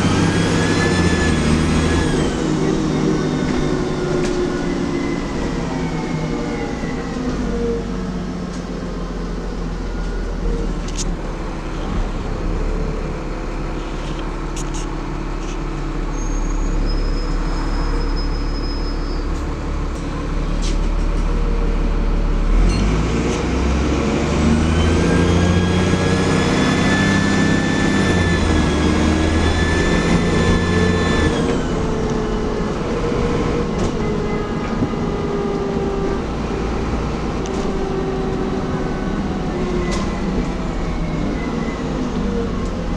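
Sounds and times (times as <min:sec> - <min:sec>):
bus engine: 0:00.0 - 0:42.9.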